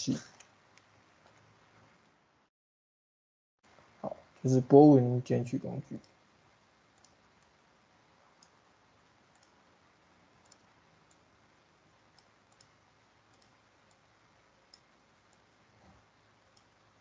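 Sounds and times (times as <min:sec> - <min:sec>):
faint computer mouse clicks: 0:07.0 - 0:07.6, 0:09.3 - 0:09.6, 0:10.4 - 0:11.2, 0:12.1 - 0:14.0, 0:16.5 - 0:16.8.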